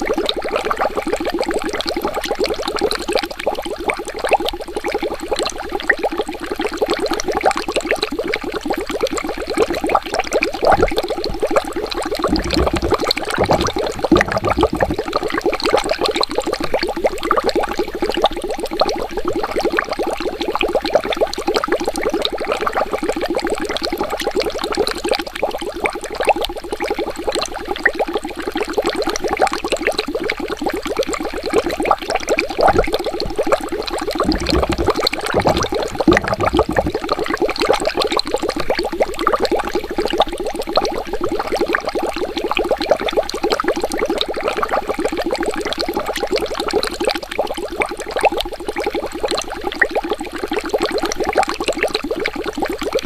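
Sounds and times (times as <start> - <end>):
low water gurgles: 0.0 - 53.0
water bubbling: 10.6 - 18.9, 32.4 - 41.8.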